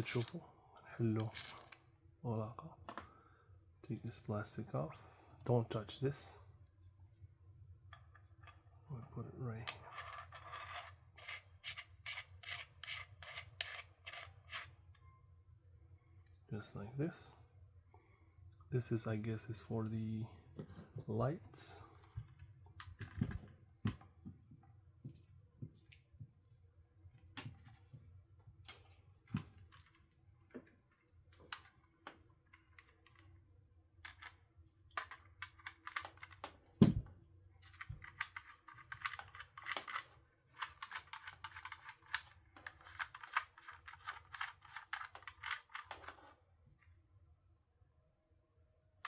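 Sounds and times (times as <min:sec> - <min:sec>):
plastic parts clicking and knocking: 0:22.0 - 0:26.0, 0:34.1 - 0:46.3
crackly rustling and small clicks: 0:37.6 - 0:47.0.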